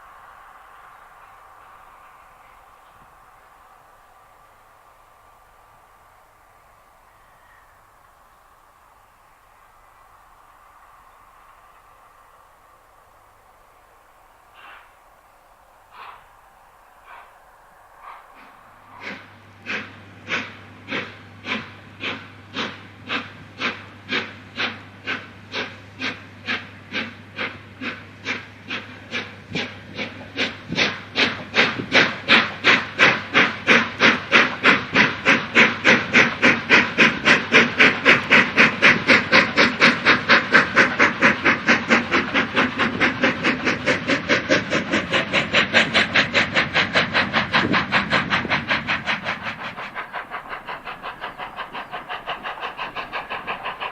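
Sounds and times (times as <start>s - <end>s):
steam locomotive exhaust beats: 0.0s - 53.9s.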